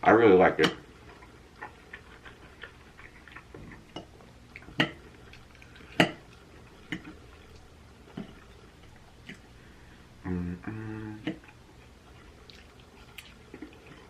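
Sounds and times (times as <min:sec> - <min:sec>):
person chewing: 0:00.8 - 0:09.9, 0:10.7 - 0:14.0.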